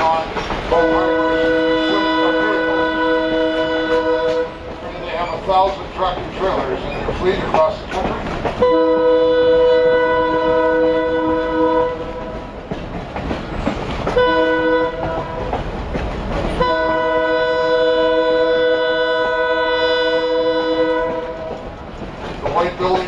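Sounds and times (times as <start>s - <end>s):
multi-tone train horn blasts: 0.0s - 4.8s, 8.6s - 12.7s, 14.0s - 15.6s, 16.5s - 21.8s
train rumbling on rails: 0.0s - 23.0s.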